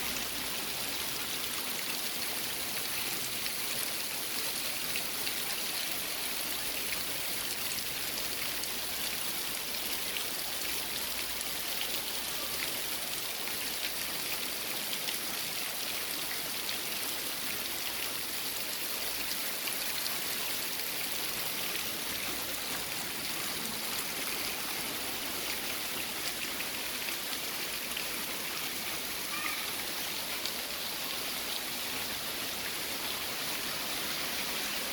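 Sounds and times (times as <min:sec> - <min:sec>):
heavy rain hissing: 0:19.4 - 0:34.9.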